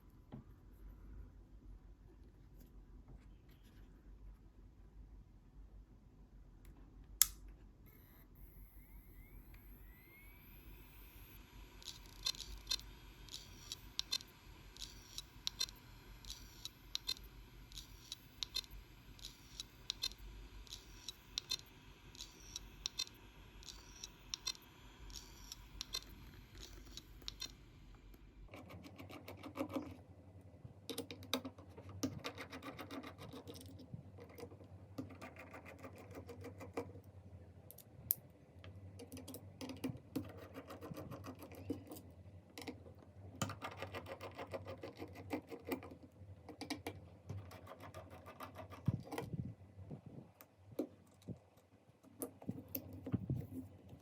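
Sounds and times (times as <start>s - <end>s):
hard disk drive clicking: 7.2s - 28.2s.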